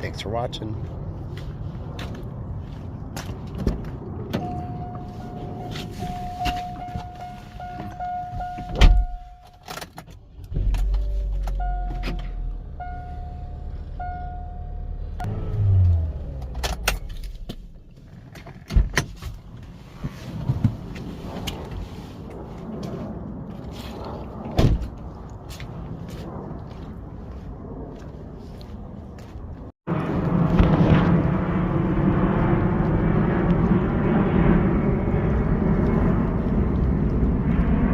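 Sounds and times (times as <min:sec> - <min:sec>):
car warning chime: 0:04.4 - 0:09.7, 0:11.2 - 0:15.3.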